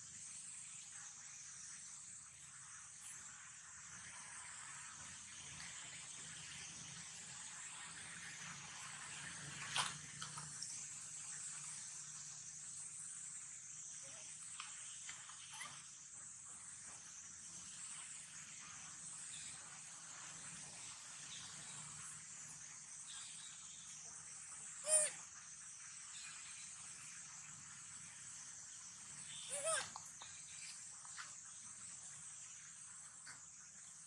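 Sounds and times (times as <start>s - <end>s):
high-pitched insect drone: 21.4s - 25.5s, 28.3s - 33.6s
baby monkey cry: 24.8s - 25.2s, 29.5s - 30.0s
faint short calls: 24.8s - 25.3s, 29.3s - 30.4s.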